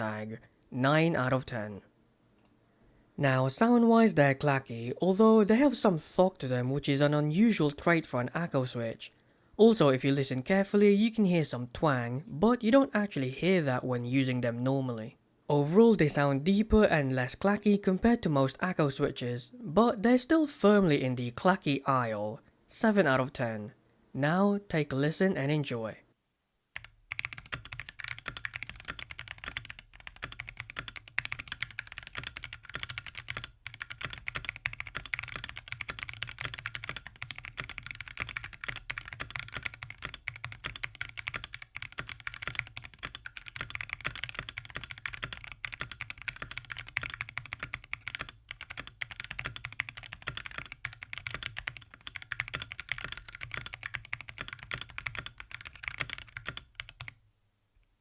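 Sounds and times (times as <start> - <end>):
fast mechanical keyboard typing: 26.8 - 57.2.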